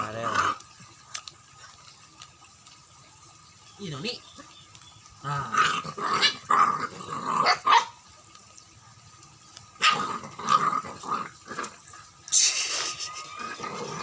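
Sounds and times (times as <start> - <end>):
dog barking and growling: 0.0 - 0.6, 5.2 - 8.0, 9.8 - 12.0, 12.9 - 14.0.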